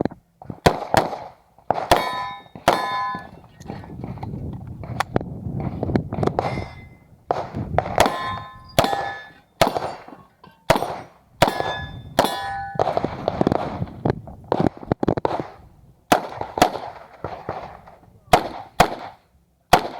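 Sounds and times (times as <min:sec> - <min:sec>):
pistol shots: 0:00.6 - 0:03.5, 0:06.3 - 0:13.9, 0:14.5 - 0:19.9
steel plates clanging: 0:01.9 - 0:03.6, 0:06.4 - 0:07.1, 0:08.0 - 0:13.0.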